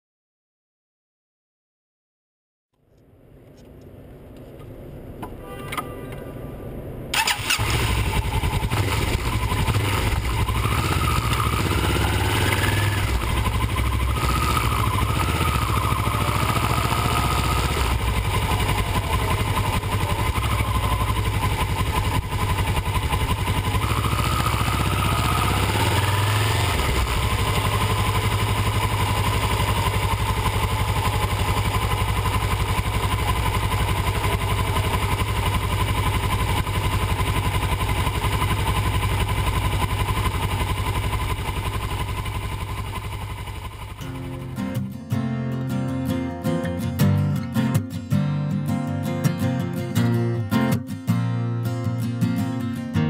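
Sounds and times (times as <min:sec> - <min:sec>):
vehicle engine rumbling: 0:02.8 - 0:44.8.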